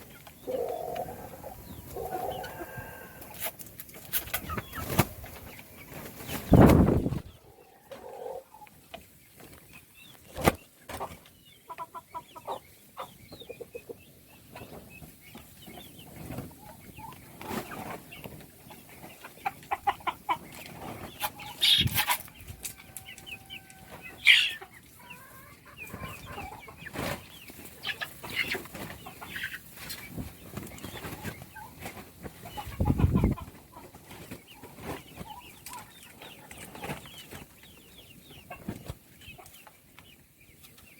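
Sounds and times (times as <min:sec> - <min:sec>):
baby chicks cheeping: 0:00.0 - 0:40.9.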